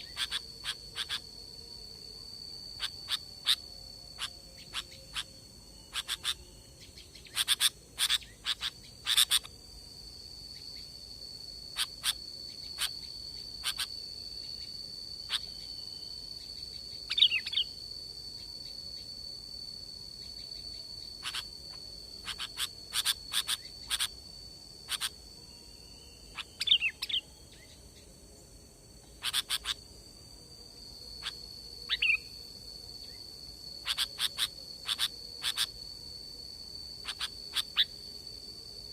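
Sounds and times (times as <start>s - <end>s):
bird chirping: 0.0s - 1.2s, 2.8s - 9.5s, 16.4s - 17.8s, 20.6s - 21.5s, 22.2s - 24.1s, 24.9s - 28.1s, 29.0s - 29.8s, 31.2s - 32.4s, 33.8s - 35.7s, 37.0s - 38.0s
high insect buzz: 0.0s - 38.9s.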